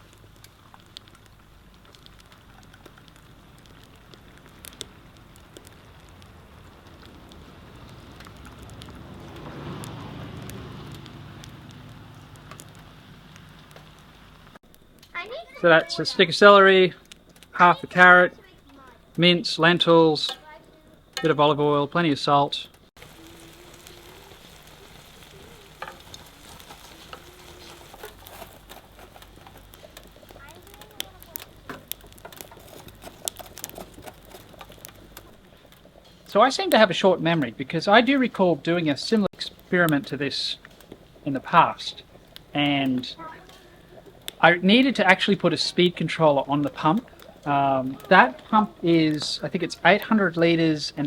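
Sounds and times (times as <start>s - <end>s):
stirring clicks: 0.0s - 7.4s, 22.7s - 38.4s, 39.3s - 50.6s
sharp fire pops: 0.0s - 16.0s, 22.7s - 38.4s
wood fire crackling: 0.0s - 51.0s
food sizzling in a pan: 22.9s - 32.5s, 36.0s - 51.0s.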